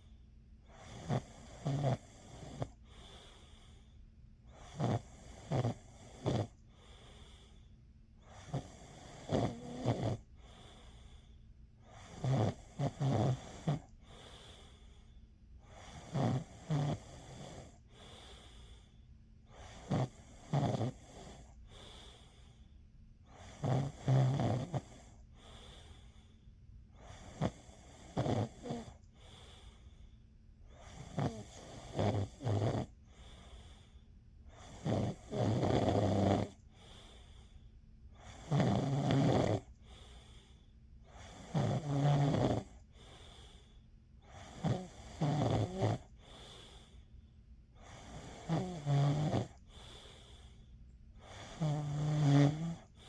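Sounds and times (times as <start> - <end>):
person snoring: 0.7 - 3.4, 4.6 - 7.0, 8.3 - 10.8, 12.0 - 14.6, 15.7 - 18.5, 19.6 - 22.2, 23.4 - 26.1, 27.0 - 29.4, 30.8 - 33.6, 34.5 - 37.1, 38.2 - 39.8, 41.1 - 42.9, 44.3 - 46.9, 47.8 - 50.3, 51.2 - 53.0.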